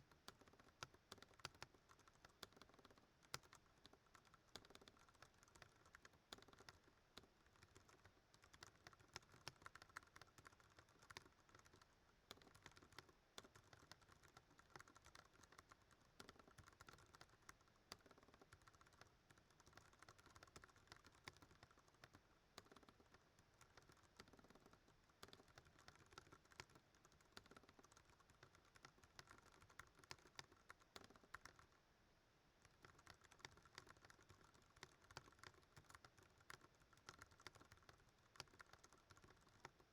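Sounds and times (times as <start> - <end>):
mechanical keyboard typing: 0.2 - 31.8, 32.6 - 39.9.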